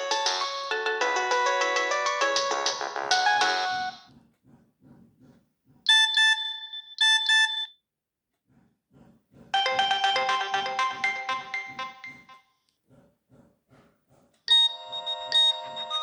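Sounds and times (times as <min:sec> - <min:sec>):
polyphonic ringtone melody: 0:00.0 - 0:04.0, 0:09.6 - 0:12.4, 0:14.5 - 0:16.0
high-pitched phone beeping: 0:05.9 - 0:07.7, 0:09.6 - 0:12.4, 0:14.5 - 0:16.0.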